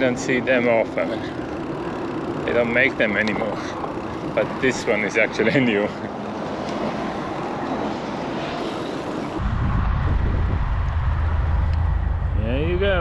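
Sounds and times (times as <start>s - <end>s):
bicycle tyre noise: 0.4s - 5.5s, 6.3s - 12.1s
heavy low rumble: 9.4s - 13.0s
wind noise: 9.4s - 13.0s.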